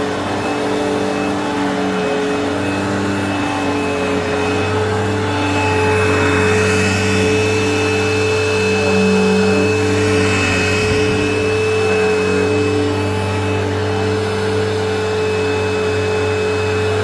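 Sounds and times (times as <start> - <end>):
upright vacuum cleaner running: 0.0 - 17.0.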